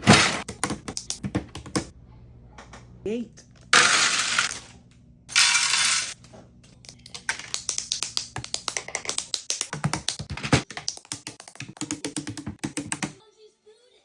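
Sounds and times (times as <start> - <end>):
plastic bricks clattering: 3.8 - 4.7, 5.3 - 6.2.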